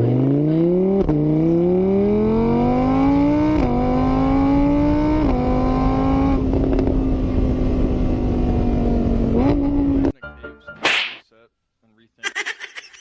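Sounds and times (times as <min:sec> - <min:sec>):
vehicle engine accelerating: 0:00.0 - 0:10.1.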